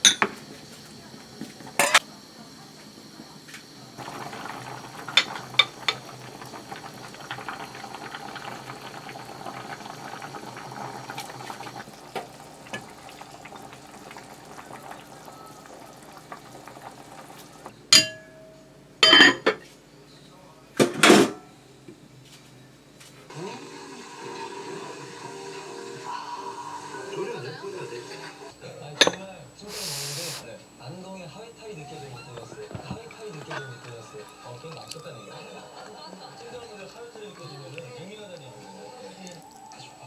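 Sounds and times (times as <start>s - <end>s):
dishes and utensils clinking: 0.0s - 0.4s, 1.7s - 2.0s, 17.9s - 19.7s, 29.0s - 29.3s, 32.7s - 34.9s
steady hiss of water or frying: 0.0s - 17.7s, 29.6s - 30.6s.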